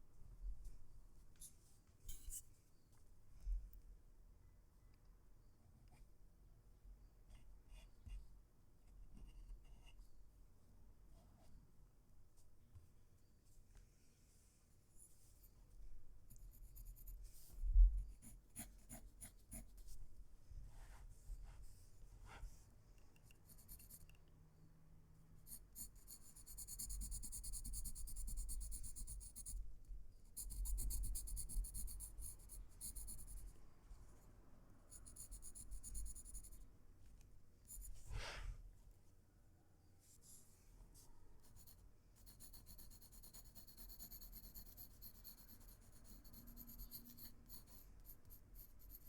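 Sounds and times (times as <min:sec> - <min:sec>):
pencil scratching on paper: 0:16.3 - 0:17.5, 0:18.1 - 0:20.0, 0:23.4 - 0:24.1, 0:25.4 - 0:29.6, 0:30.3 - 0:33.5, 0:34.9 - 0:36.6, 0:37.7 - 0:38.1, 0:41.4 - 0:49.0.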